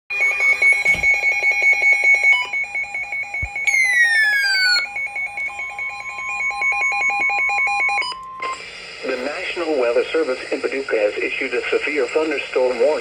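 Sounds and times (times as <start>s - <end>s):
alternating high and low beeps: 0.1s - 8.6s.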